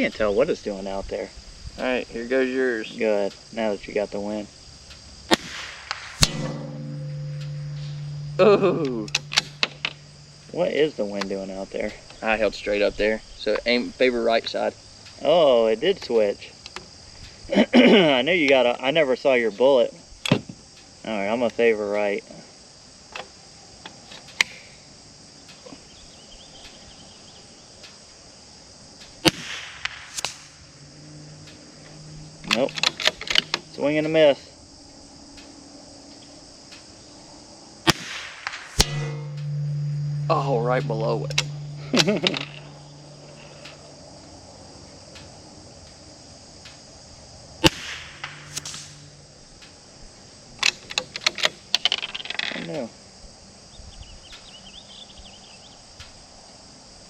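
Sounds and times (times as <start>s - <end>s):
rifle shot with echo: 5.3s - 8.1s, 29.2s - 30.6s, 37.9s - 39.4s, 47.6s - 49.0s.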